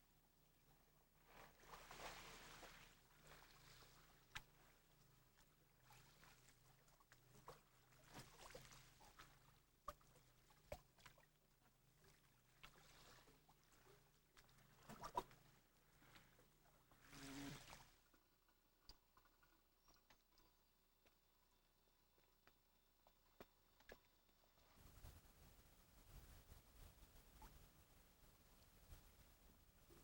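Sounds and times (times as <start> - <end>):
water splashing or lapping: 1.2 - 18.2.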